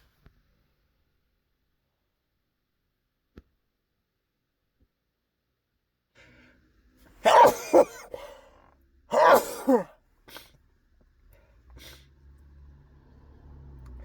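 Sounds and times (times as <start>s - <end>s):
man sneezing: 7.2s - 8.5s, 9.1s - 10.5s
faint intake of breath: 7.3s - 8.6s.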